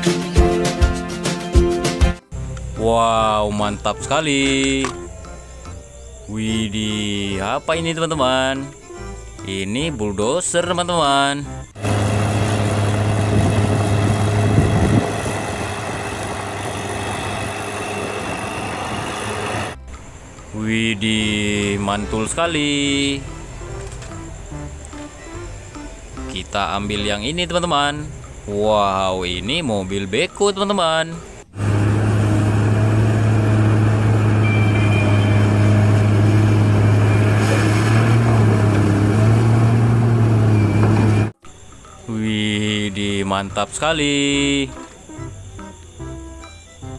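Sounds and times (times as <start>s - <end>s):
bulldozer engine idling: 11.7s - 28.7s, 31.2s - 42.0s
deep hum: 11.8s - 21.8s.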